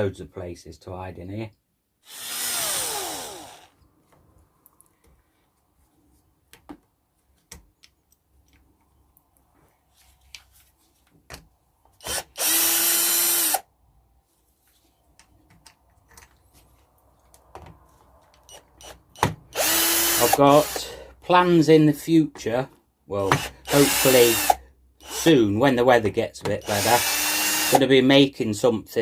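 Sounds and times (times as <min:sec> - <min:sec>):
power drill running: 0:02.0 - 0:03.8, 0:12.0 - 0:13.6, 0:18.5 - 0:20.8, 0:23.3 - 0:25.4, 0:26.6 - 0:27.8.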